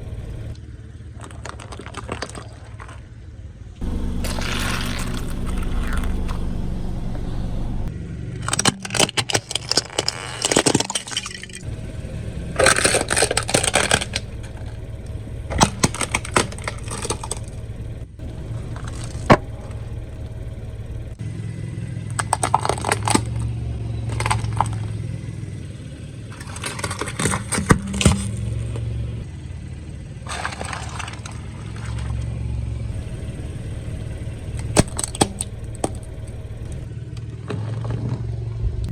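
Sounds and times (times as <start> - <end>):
car tyres crushing crunchy objects: 0.0 - 21.2, 22.0 - 38.9
low hum of car engine: 0.0 - 38.9
sharp crack: 3.8 - 11.7, 12.5 - 17.8, 33.6 - 36.8.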